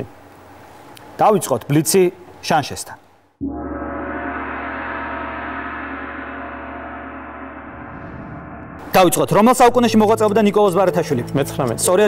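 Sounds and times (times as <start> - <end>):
gong-like ringing: 3.4 - 9.6.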